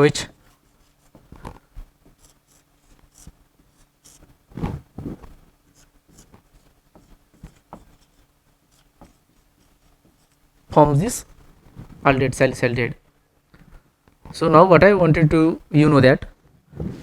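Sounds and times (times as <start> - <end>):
pen scratching on paper: 0.5 - 1.4, 2.0 - 10.5.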